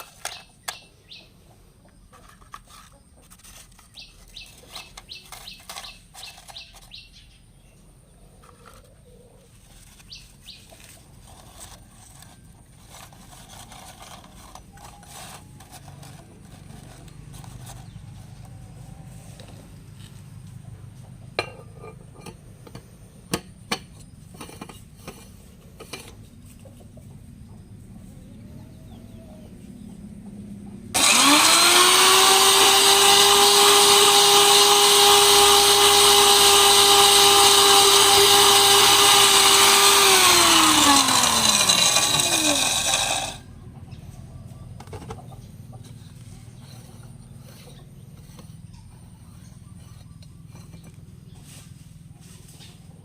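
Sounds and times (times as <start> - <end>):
biscuits being ground: 2.2 - 7.1, 8.5 - 20.6, 31.0 - 43.4, 45.8 - 51.4
electric grinder whining: 11.2 - 18.5, 30.9 - 43.5.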